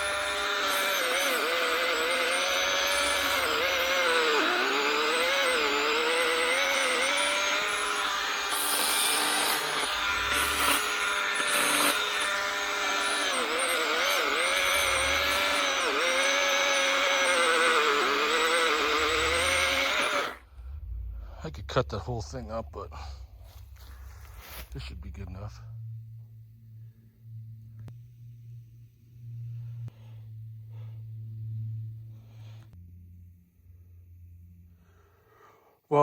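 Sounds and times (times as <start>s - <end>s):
electric saw cutting log: 0.0s - 20.4s.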